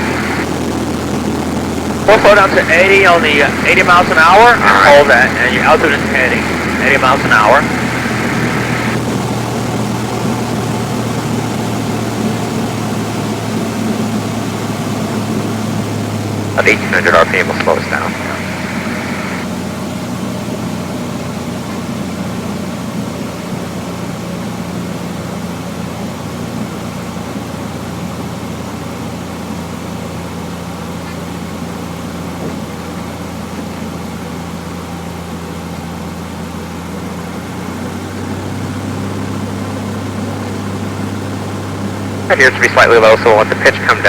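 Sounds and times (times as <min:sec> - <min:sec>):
propeller plane engine droning: 0:00.0 - 0:44.0.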